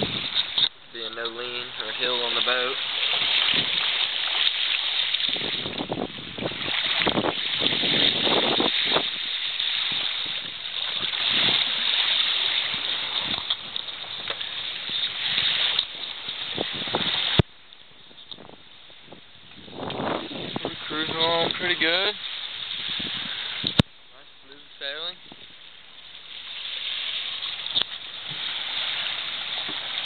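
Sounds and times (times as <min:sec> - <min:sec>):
wind on microphone: 0:00.0 - 0:00.7, 0:03.2 - 0:04.0, 0:05.1 - 0:23.9, 0:25.2 - 0:25.6
water rushing and splashing: 0:00.0 - 0:30.0.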